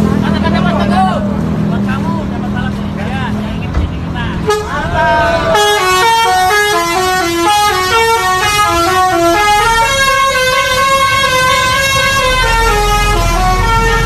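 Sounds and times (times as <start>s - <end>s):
bus horn playing melody: 4.4s - 14.0s.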